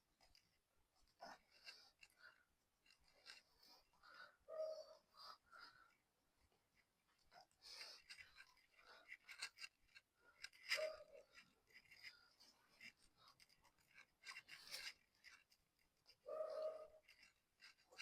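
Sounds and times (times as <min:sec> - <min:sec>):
cloth rubbing a drive chain: 0:06.7 - 0:18.0.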